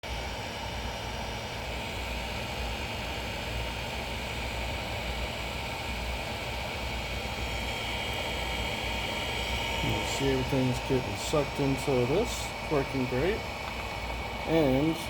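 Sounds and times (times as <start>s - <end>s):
fans whirring: 0.1s - 15.0s
faint high whine: 3.0s - 15.0s.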